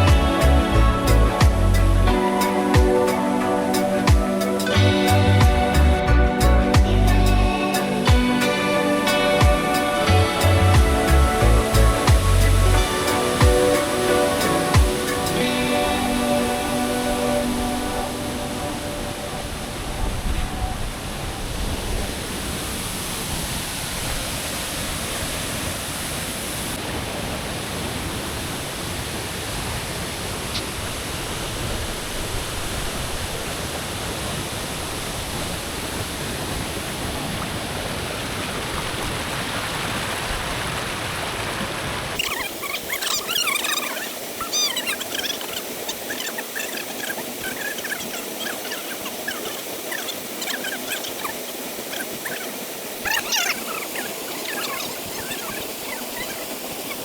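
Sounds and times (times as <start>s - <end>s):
birds chirping: 0.0s - 20.7s, 42.2s - 57.0s
waterfall roaring: 0.0s - 57.0s.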